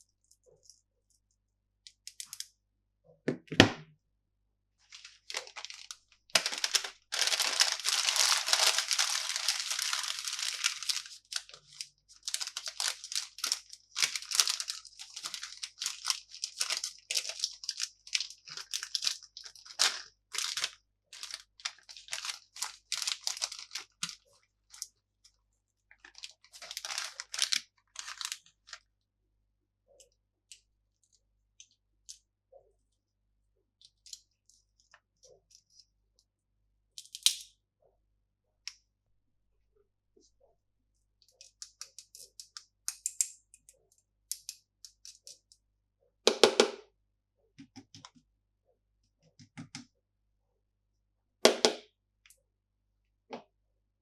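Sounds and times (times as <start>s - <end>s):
plastic crinkling and crackling: 4.8s - 24.9s, 25.9s - 28.9s
plastic packaging tearing: 5.0s - 24.2s, 26.2s - 28.4s.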